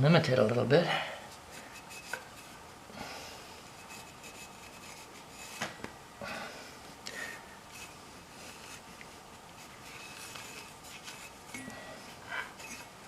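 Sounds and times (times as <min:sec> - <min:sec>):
rag swishing on brake rotor: 0:07.7 - 0:11.6.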